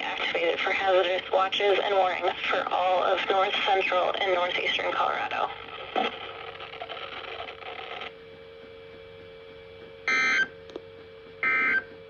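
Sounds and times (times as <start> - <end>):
automated voice on radio: 0.0 - 5.5.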